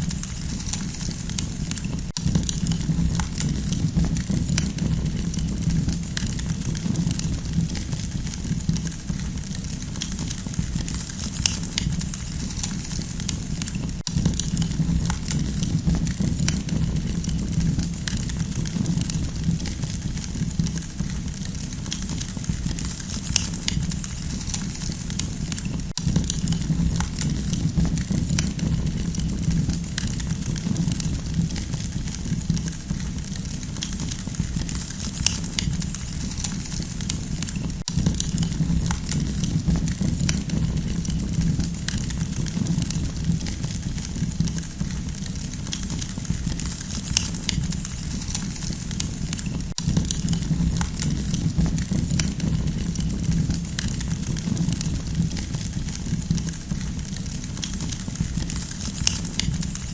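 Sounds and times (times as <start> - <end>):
campfire pops and snaps: 0.0 - 59.9
low rumble of flames: 0.0 - 59.9.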